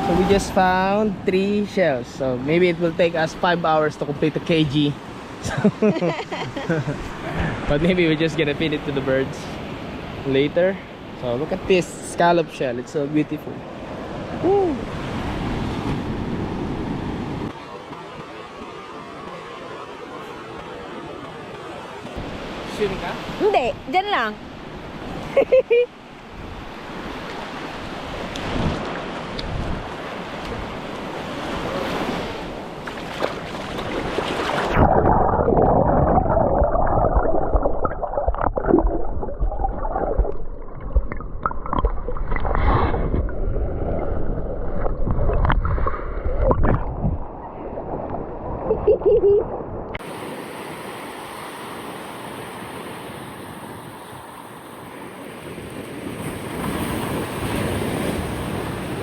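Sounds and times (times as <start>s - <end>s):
surf washing on sand: 0.0s - 38.5s, 50.0s - 59.0s
wind on microphone: 27.8s - 50.2s.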